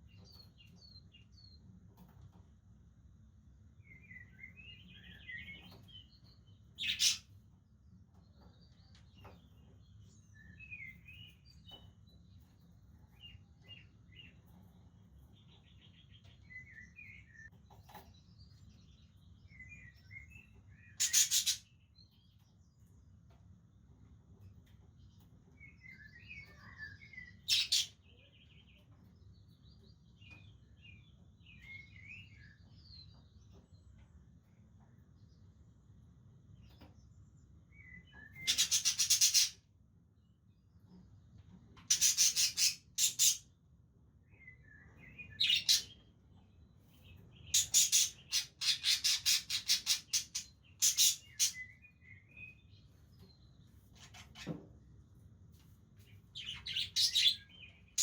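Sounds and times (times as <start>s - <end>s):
budgerigars chattering: 6.8s - 7.2s, 21.0s - 21.6s, 38.4s - 39.6s
harsh bird calls: 6.8s - 7.3s, 20.8s - 21.8s, 25.8s - 28.1s, 37.9s - 39.6s.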